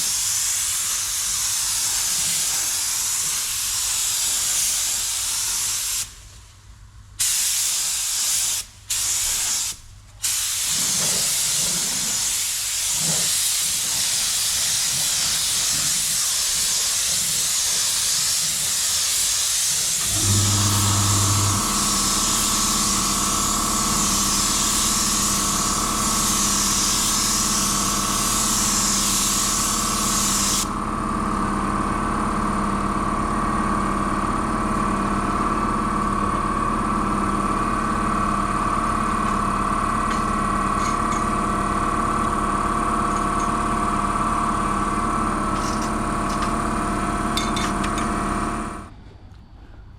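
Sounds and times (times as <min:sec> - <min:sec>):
spray gun hissing: 0:00.0 - 0:06.2, 0:07.2 - 0:30.8
motor humming: 0:20.0 - 0:33.7.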